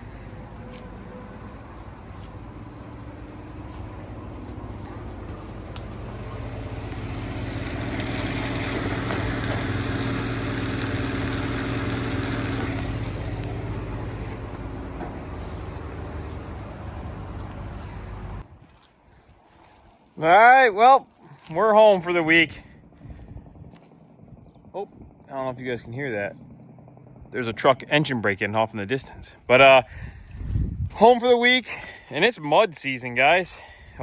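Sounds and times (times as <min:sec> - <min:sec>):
heavy truck engine drone: 0:00.0 - 0:18.5
road and wind noise: 0:00.0 - 0:18.9, 0:22.8 - 0:25.2, 0:29.9 - 0:31.0.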